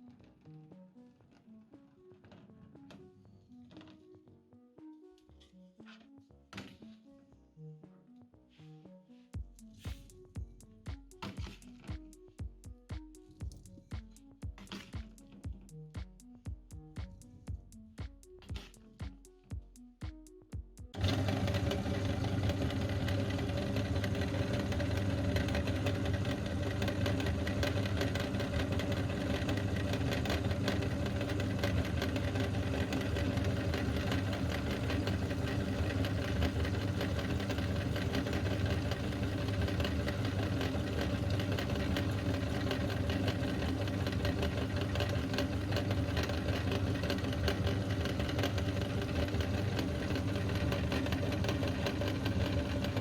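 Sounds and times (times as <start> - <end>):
meat grinder motor humming: 21.0 - 53.0.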